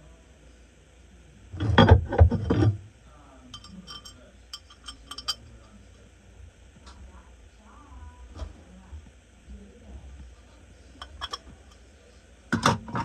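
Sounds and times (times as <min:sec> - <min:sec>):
light metallic clinks: 0:03.5 - 0:05.8
metal hardware rattling: 0:03.6 - 0:05.6.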